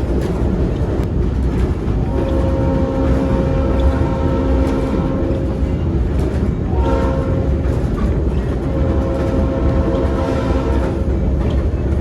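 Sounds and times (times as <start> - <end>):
train rumbling on rails: 0.0 - 12.0
locomotive horn blasts: 2.1 - 5.5, 6.7 - 7.6, 8.7 - 11.1.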